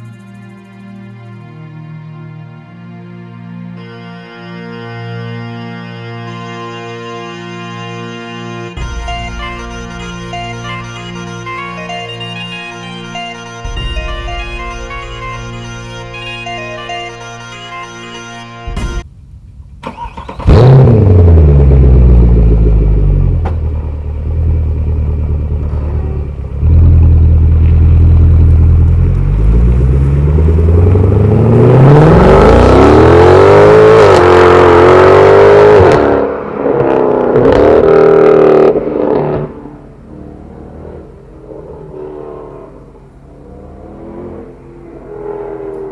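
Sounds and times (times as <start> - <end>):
car engine revving: 18.5 - 45.9.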